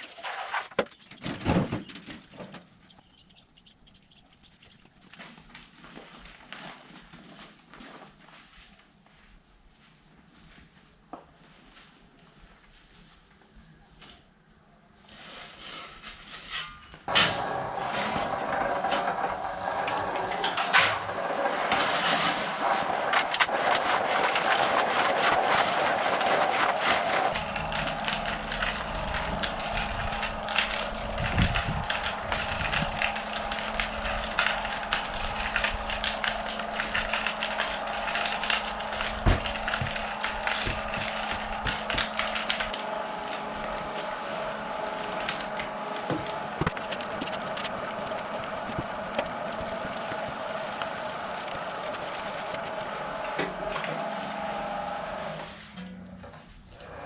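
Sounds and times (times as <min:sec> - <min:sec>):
concrete mix rattling in mixer: 0:17.1 - 0:55.4
mixer motor hum: 0:17.1 - 0:57.0.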